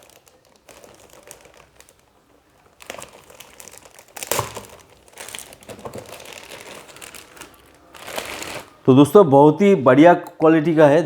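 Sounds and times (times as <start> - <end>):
packaging crinkling and rustling: 0.0 - 8.9.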